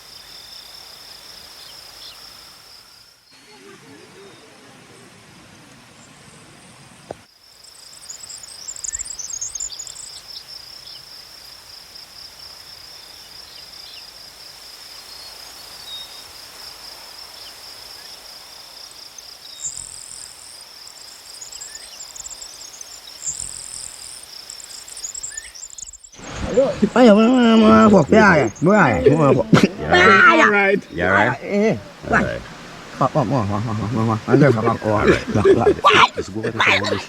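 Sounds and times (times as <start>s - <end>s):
high insect chirps: 0.0s - 3.6s, 7.3s - 37.0s
insects chirring: 0.0s - 4.7s, 6.8s - 37.0s.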